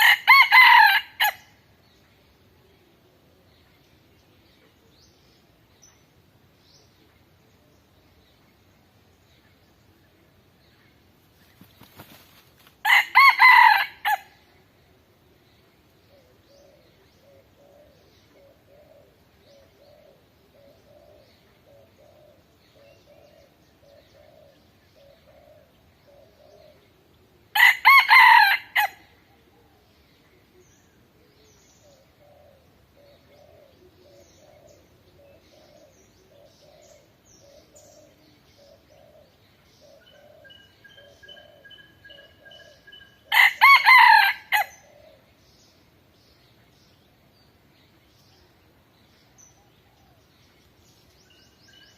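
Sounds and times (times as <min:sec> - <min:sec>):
rooster crowing: 0:00.0 - 0:01.4, 0:12.8 - 0:14.3, 0:27.6 - 0:29.0, 0:43.3 - 0:44.7.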